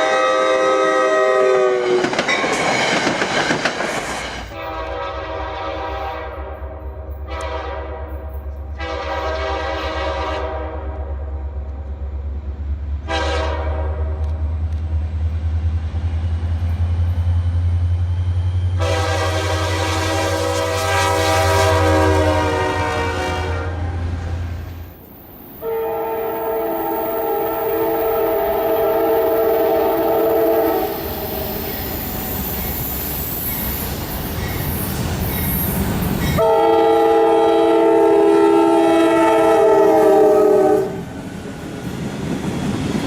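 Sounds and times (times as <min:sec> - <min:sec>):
locomotive air horn blasts: 0:00.0 - 0:02.1, 0:04.5 - 0:11.4, 0:13.0 - 0:14.4, 0:18.8 - 0:24.2, 0:25.6 - 0:31.4, 0:36.4 - 0:41.1
train rumbling on rails: 0:00.0 - 0:43.0.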